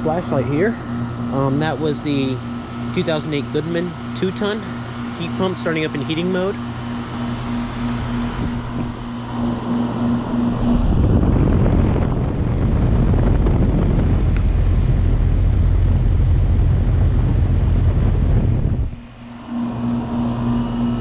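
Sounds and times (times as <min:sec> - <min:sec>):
heat pump humming: 0:00.0 - 0:21.0
wind buffeting microphone: 0:08.0 - 0:19.2.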